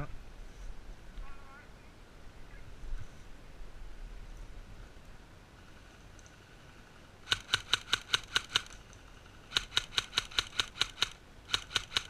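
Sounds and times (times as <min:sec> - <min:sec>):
airsoft rifle shots: 0:07.2 - 0:08.8, 0:09.5 - 0:12.0.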